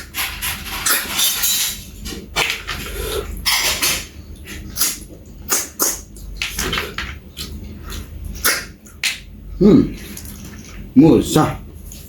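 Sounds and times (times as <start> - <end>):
chewing and slurping: 4.3 - 8.7.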